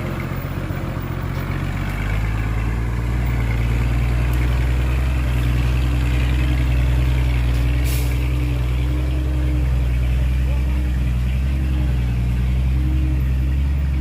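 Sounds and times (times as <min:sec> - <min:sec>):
diesel engine idling: 0:00.0 - 0:14.0
short hiss: 0:07.8 - 0:08.3.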